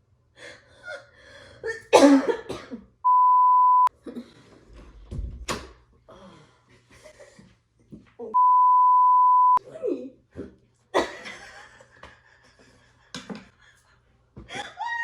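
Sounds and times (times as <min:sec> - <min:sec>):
harsh cough: 0:01.9 - 0:02.9, 0:11.0 - 0:11.4
censor bleep: 0:03.1 - 0:03.9, 0:08.4 - 0:09.6.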